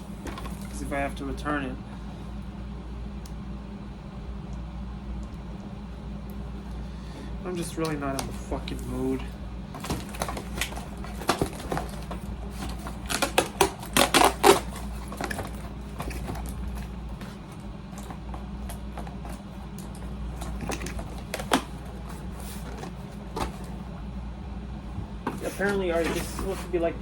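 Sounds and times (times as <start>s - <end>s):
air conditioner humming: 0.0s - 27.0s
cardboard packaging being opened: 8.1s - 23.9s.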